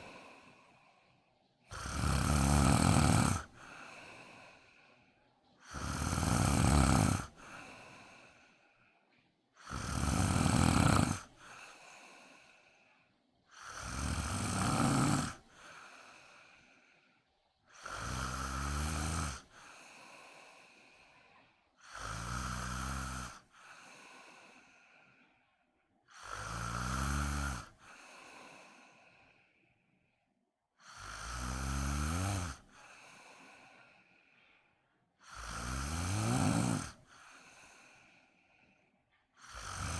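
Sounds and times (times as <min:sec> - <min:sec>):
person snoring loudly: 0:00.0 - 0:01.0, 0:01.7 - 0:04.9, 0:05.6 - 0:08.6, 0:09.6 - 0:12.8, 0:13.5 - 0:17.0, 0:17.7 - 0:21.0, 0:21.8 - 0:24.9, 0:26.1 - 0:29.4, 0:30.8 - 0:34.0, 0:35.2 - 0:38.2, 0:39.4 - 0:39.9
quiet breath: 0:00.0 - 0:39.9.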